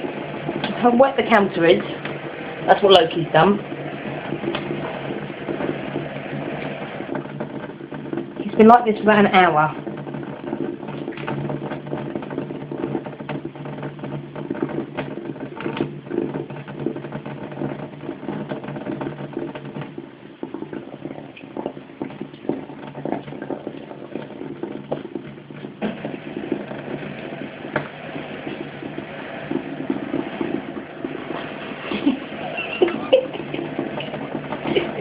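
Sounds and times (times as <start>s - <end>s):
water splashing: 0.0s - 35.0s.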